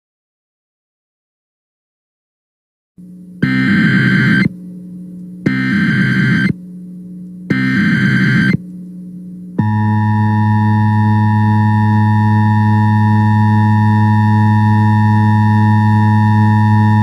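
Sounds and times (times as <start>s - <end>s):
low steady hum: 3.0s - 17.0s
screeching digital data tones: 3.4s - 4.5s, 5.5s - 6.6s, 7.5s - 8.6s.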